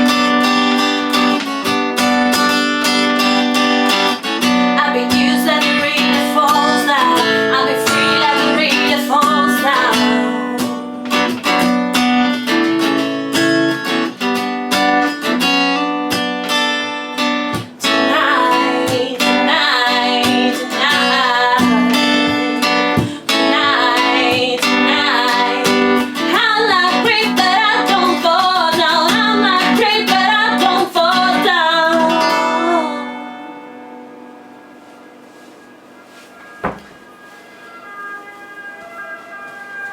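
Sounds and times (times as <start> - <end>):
acoustic guitars strumming: 0.0 - 39.9
wavering melody line: 34.0 - 39.9.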